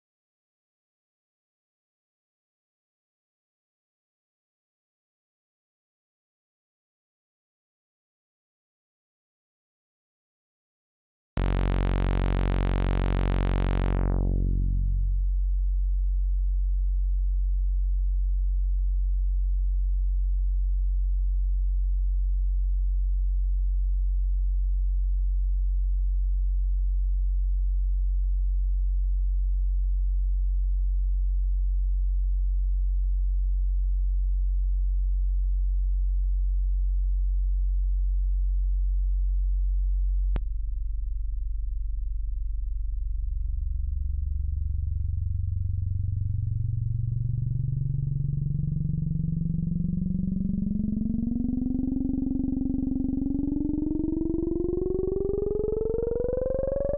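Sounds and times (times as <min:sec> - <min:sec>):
low synthesizer drone: 0:11.4 - 0:15.4, 0:40.4 - 0:56.9.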